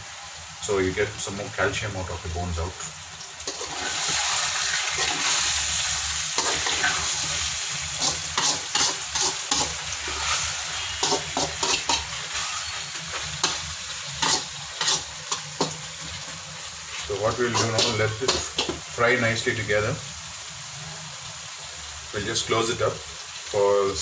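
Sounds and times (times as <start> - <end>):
food sizzling in oil: 0.0 - 24.0
spoon scraping and clattering: 8.0 - 15.7.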